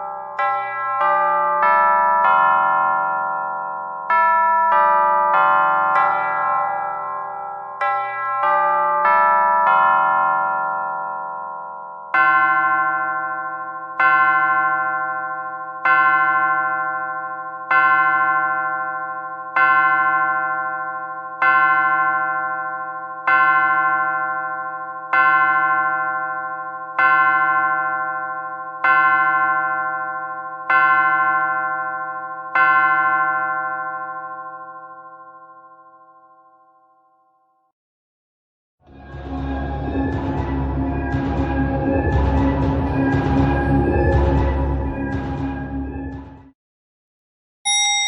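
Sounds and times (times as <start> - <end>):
chime melody: 47.7 - 48.0
clock striking ringing strokes: 47.7 - 48.0.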